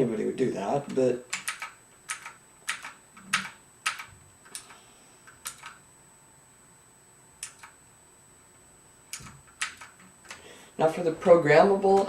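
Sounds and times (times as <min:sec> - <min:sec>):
mechanical keyboard clicks: 0:00.8 - 0:05.8, 0:07.4 - 0:07.8, 0:09.1 - 0:10.4.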